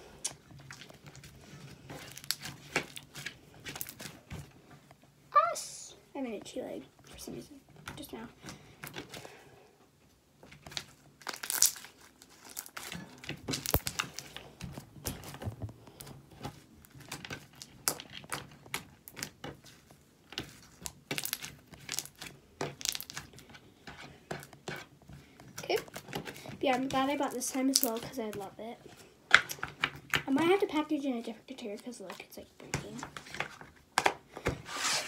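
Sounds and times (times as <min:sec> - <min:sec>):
slime crackling and popping: 0:02.0 - 0:04.2, 0:10.6 - 0:15.4, 0:16.8 - 0:23.4, 0:25.5 - 0:28.4.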